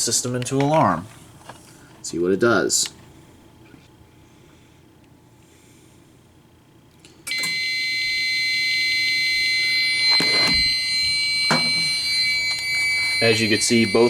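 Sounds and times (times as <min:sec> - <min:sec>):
high-pitched alarm buzzer tone: 0:07.3 - 0:14.0.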